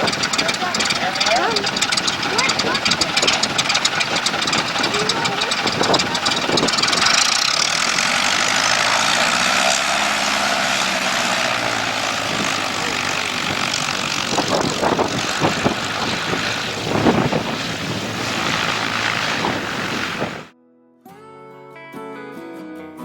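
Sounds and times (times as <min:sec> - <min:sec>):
propeller airplane engine running: 0:00.0 - 0:20.5.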